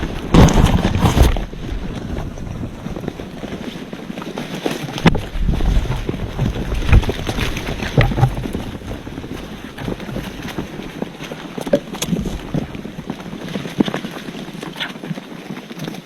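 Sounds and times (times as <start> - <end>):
knocks and thuds: 0.0 - 1.9, 5.0 - 9.0
birds scuffling and flapping: 0.0 - 16.0
wind rumble on microphone: 0.0 - 16.0.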